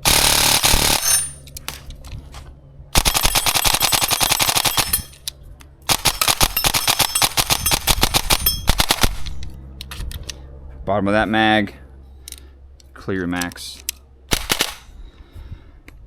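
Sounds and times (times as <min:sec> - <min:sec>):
airsoft gun full-auto bursts: 0:00.0 - 0:01.4, 0:03.0 - 0:05.1, 0:05.9 - 0:09.3, 0:14.3 - 0:14.9.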